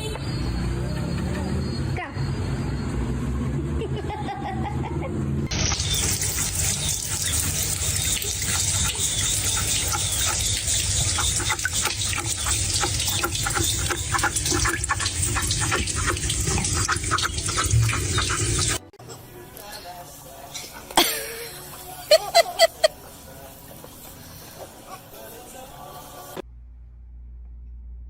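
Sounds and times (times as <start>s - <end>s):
water running: 5.5s - 18.9s.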